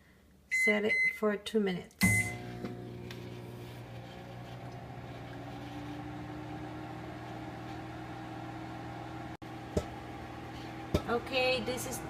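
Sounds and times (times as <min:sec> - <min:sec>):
microwave oven humming: 0:02.0 - 0:12.0.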